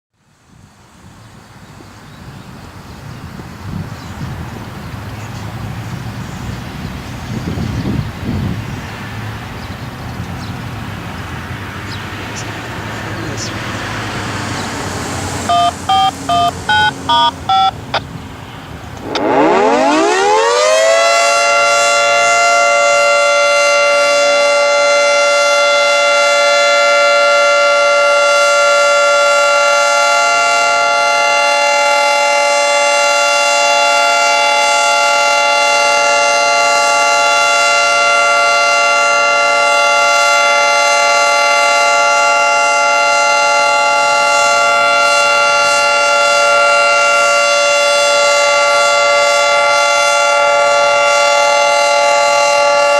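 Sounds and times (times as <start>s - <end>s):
two-tone warning siren: 15.0s - 18.2s, 19.0s - 52.9s.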